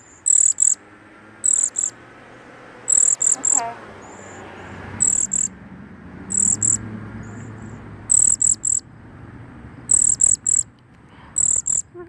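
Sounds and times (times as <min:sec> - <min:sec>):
fledgling bird begging calls: 0:00.2 - 0:00.8, 0:01.4 - 0:02.0, 0:02.9 - 0:05.5, 0:06.3 - 0:06.8, 0:08.1 - 0:08.8, 0:09.9 - 0:10.7, 0:11.4 - 0:12.0.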